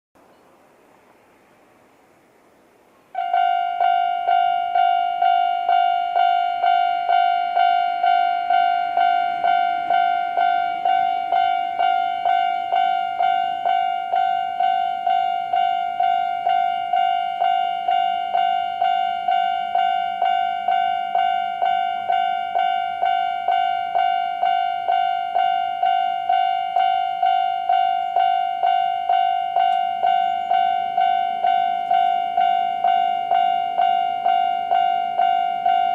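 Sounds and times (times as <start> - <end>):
level crossing warning bell dinging: 3.1 - 35.9.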